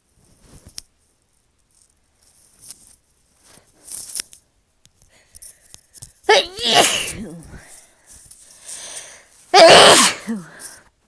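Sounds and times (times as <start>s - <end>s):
person sniffing sharply: 6.3s - 7.6s, 8.6s - 10.8s.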